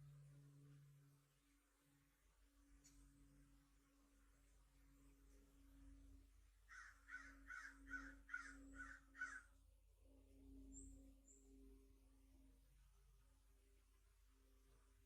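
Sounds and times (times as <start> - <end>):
bird harsh calls: 6.7 - 9.5.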